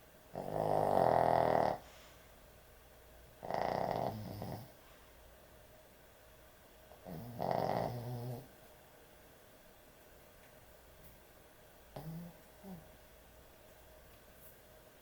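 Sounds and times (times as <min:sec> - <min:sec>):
dog snoring: 0:00.3 - 0:01.9, 0:03.4 - 0:04.8, 0:06.9 - 0:08.6, 0:11.9 - 0:12.9.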